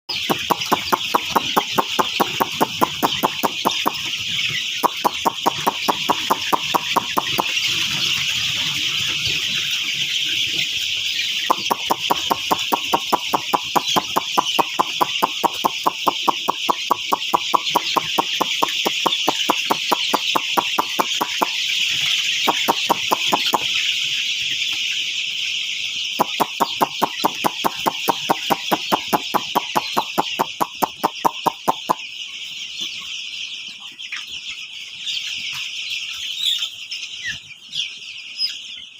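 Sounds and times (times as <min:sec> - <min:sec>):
chicks peeping: 0:00.1 - 0:38.9
fast even ticking: 0:00.2 - 0:04.0, 0:04.8 - 0:07.5, 0:11.5 - 0:21.6.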